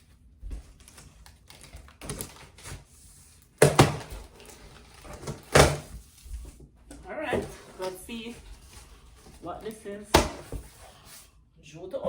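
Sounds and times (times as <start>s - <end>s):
cardboard boxes being handled: 7.2s - 11.2s.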